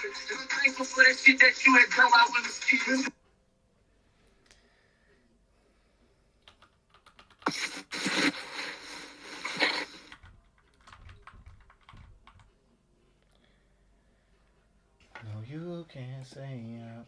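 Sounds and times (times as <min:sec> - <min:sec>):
keyboard typing: 0:06.4 - 0:07.6, 0:09.5 - 0:12.5.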